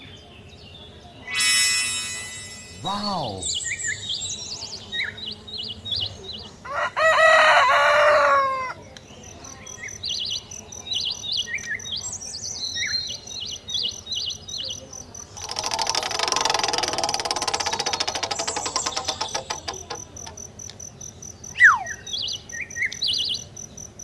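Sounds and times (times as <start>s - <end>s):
small birds chirping: 2.8s - 6.6s, 8.8s - 15.5s, 17.9s - 24.0s
rooster crowing: 6.6s - 8.8s
dense fast buzzing: 15.4s - 20.4s.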